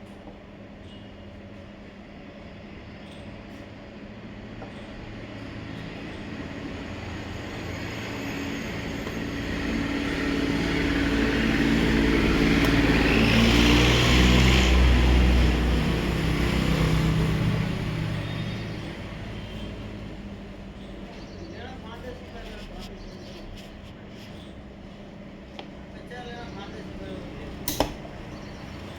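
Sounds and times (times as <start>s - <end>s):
motor vehicle driving past: 7.6s - 24.7s.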